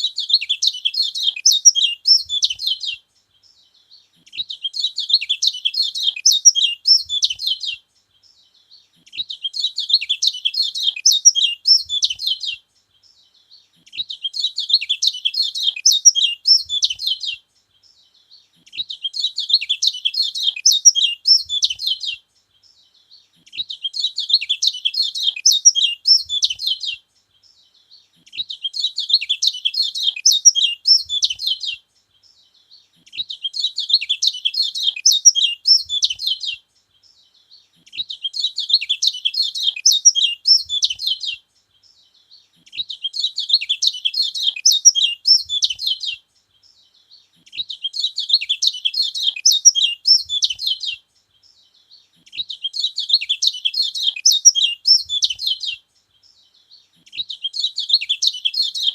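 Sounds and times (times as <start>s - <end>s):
bird singing twittering song: 0.0s - 58.9s.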